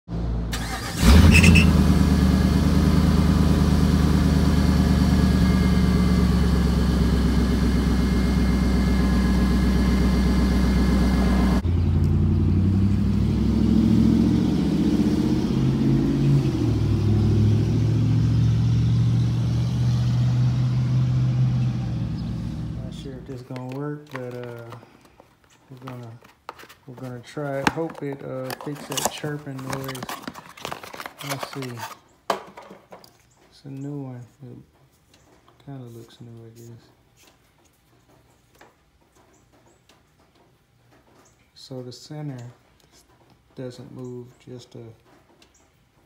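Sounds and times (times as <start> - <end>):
engine idling: 0.2 - 12.3
engine starting: 0.5 - 1.9.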